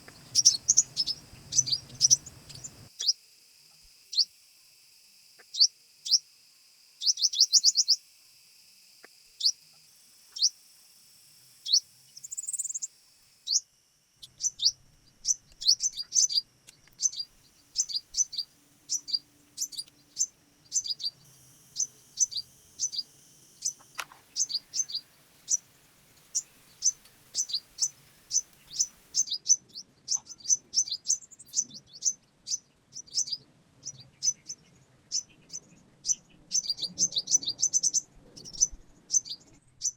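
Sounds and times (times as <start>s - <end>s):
bird chirping: 0.0s - 3.2s, 5.4s - 6.2s, 7.0s - 8.0s, 10.3s - 10.5s, 11.6s - 13.6s, 14.2s - 39.9s.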